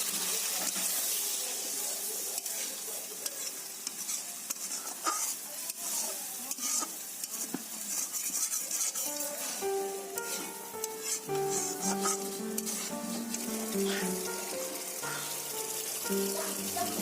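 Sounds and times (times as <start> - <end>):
curry sizzling in a pan: 0.0 - 17.0
utensil scraping a pan: 2.5 - 5.5, 6.5 - 14.5.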